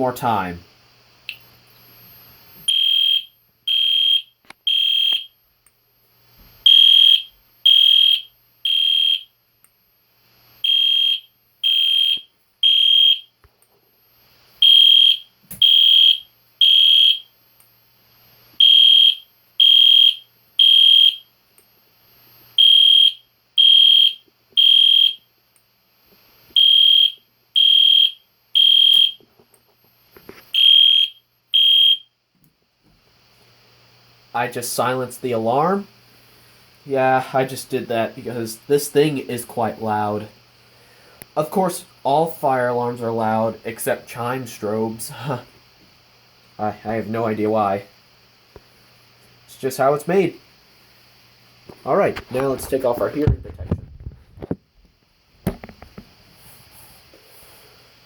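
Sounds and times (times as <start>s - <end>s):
fire alarm horn beeps: 2.7s - 5.4s, 6.7s - 9.4s, 10.6s - 13.3s, 14.6s - 17.3s, 18.6s - 21.3s, 22.6s - 25.3s, 26.6s - 29.2s, 30.5s - 32.1s.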